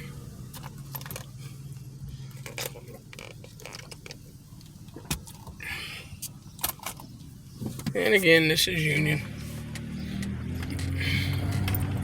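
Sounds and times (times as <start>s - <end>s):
car engine and road hum: 0.0s - 12.0s
small clicks and rattles: 2.4s - 5.5s.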